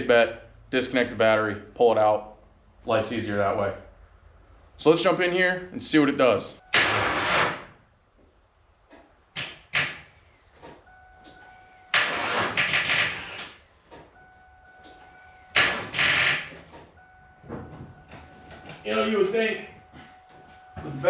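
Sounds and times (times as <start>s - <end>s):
car engine cranking: 8.9s - 19.0s
car electronic chime: 10.8s - 11.9s, 14.1s - 15.6s, 16.4s - 21.0s.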